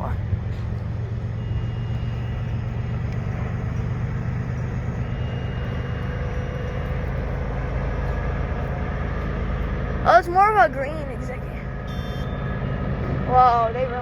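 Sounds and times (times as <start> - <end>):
freight train rumble: 0.0 - 14.0
locomotive engine drone: 0.0 - 14.0.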